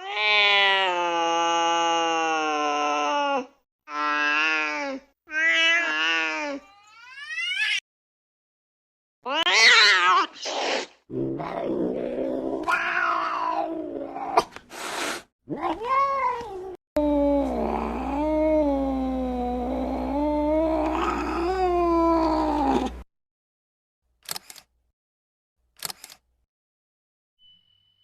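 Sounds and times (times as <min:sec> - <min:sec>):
angry cat yowling: 0:09.3 - 0:10.4, 0:11.4 - 0:14.5, 0:15.5 - 0:23.0.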